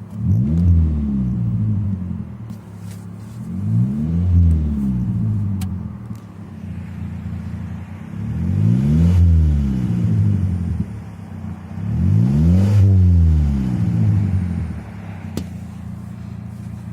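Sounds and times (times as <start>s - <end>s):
car engine idling and revving: 0.0s - 16.9s
exhaust pop: 15.2s - 16.9s.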